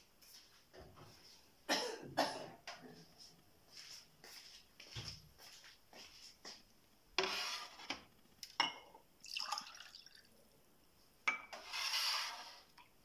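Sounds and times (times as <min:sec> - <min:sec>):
liquid splashing and trickling: 0:09.2 - 0:10.3.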